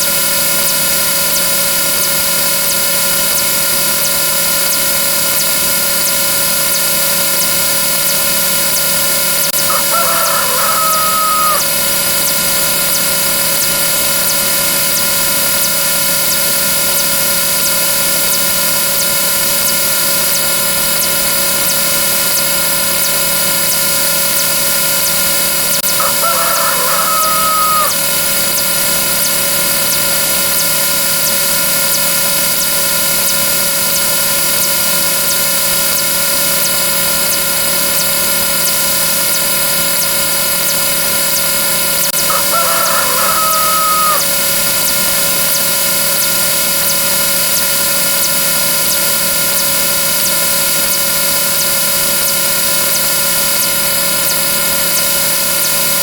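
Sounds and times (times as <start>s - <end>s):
loud steady buzz: 0.0s - 56.0s
rooster crowing: 9.6s - 11.9s, 25.9s - 28.2s, 42.2s - 44.7s.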